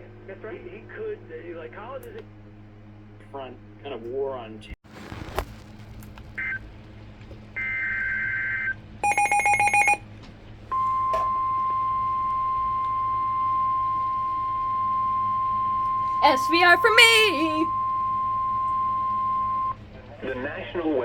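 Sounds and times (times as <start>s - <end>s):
steady warning alarm tone: 7.6s - 10.0s, 10.7s - 19.8s
rapid beeps: 9.0s - 10.0s, 15.4s - 19.7s.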